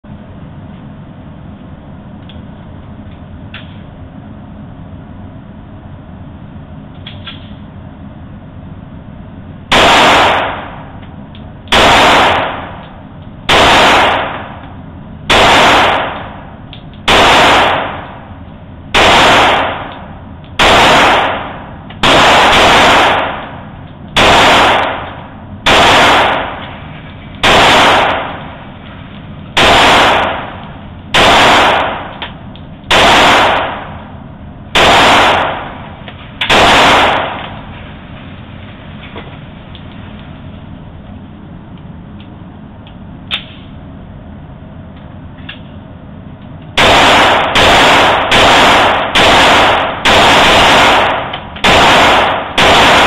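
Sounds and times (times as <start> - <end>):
gunshots with echo: 9.7 - 10.9, 11.7 - 12.8, 13.5 - 14.6, 15.3 - 16.5, 17.1 - 18.3, 18.9 - 26.7, 27.4 - 28.6, 29.6 - 32.2, 32.9 - 34.1, 34.7 - 37.7, 46.8 - 53.0.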